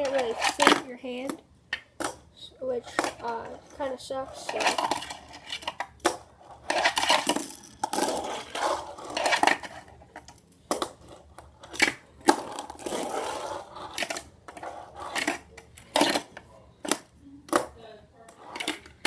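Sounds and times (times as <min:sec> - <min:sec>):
fingerboard rolling on plastic: 0:02.9 - 0:16.9.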